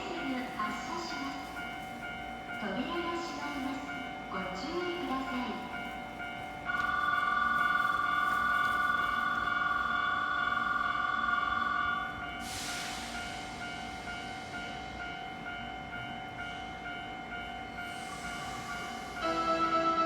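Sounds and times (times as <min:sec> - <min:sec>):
air hiss: 0:12.4 - 0:13.5.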